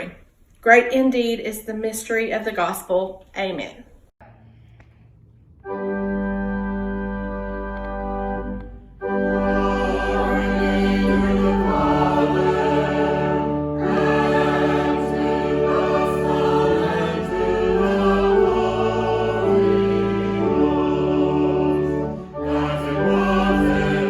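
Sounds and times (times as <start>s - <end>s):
church organ chord: 5.6s - 24.0s
choir singing a hymn: 8.4s - 24.0s.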